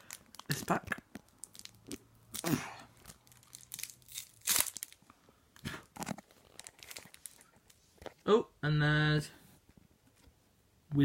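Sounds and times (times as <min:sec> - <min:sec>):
wrapper ripping and rustling: 0:00.0 - 0:05.0, 0:05.9 - 0:07.8.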